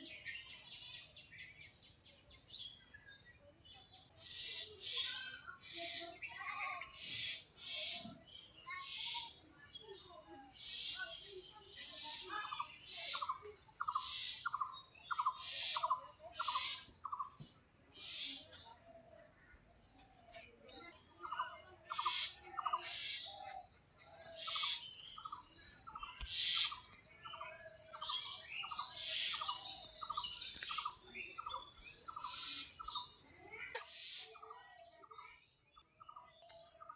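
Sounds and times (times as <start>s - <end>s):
harsh rasping bird calls: 12.0s - 17.3s, 18.0s - 18.6s, 20.2s - 27.4s, 28.0s - 34.3s.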